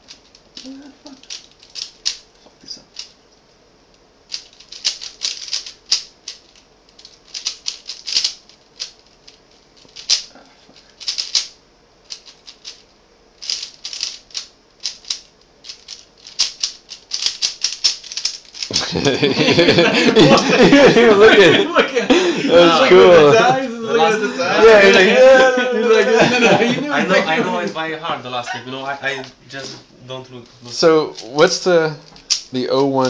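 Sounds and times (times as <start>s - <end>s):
puzzle cube plastic clicking: 4.3s - 10.3s, 11.0s - 11.5s, 13.4s - 18.8s.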